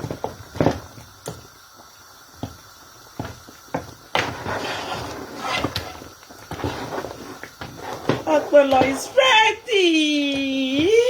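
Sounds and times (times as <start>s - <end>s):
scraping in a pot: 4.2s - 9.2s.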